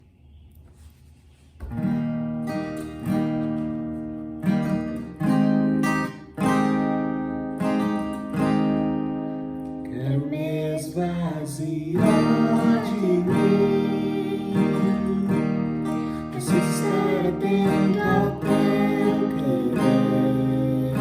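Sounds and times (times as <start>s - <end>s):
acoustic guitar strumming chords: 1.6s - 21.0s
person singing: 9.9s - 21.0s.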